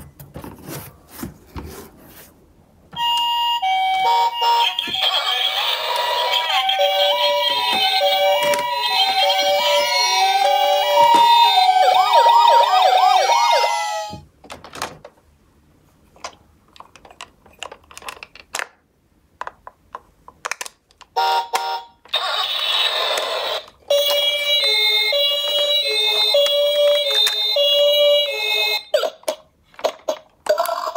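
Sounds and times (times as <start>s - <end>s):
hi-lo ambulance siren: 3.0s - 14.2s, 23.9s - 29.0s
two-tone toy siren: 3.0s - 14.2s, 21.2s - 29.2s
wailing toy siren: 3.0s - 14.2s, 21.2s - 29.2s.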